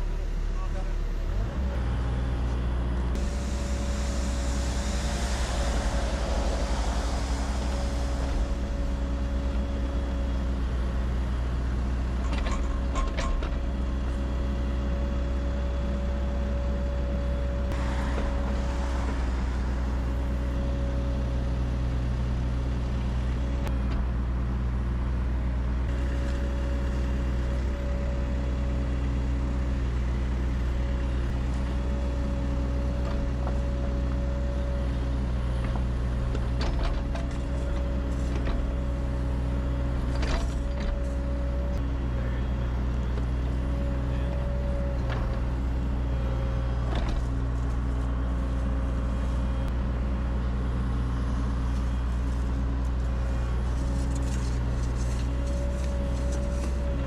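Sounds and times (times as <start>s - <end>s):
excavator diesel engine running: 0.0s - 57.0s
steady whine: 3.1s - 13.8s, 14.9s - 23.8s
rushing noise: 3.2s - 12.0s, 17.6s - 23.7s.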